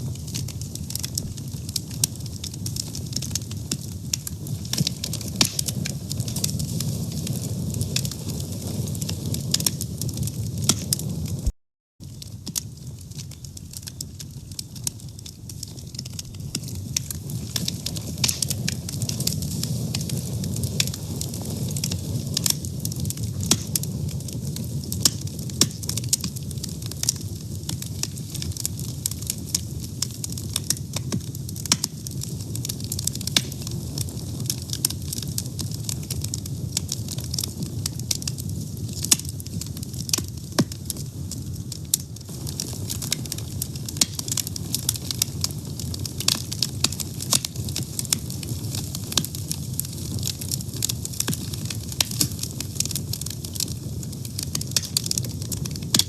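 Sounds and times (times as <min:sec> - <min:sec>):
fire crackling and popping: 0:00.0 - 0:56.0.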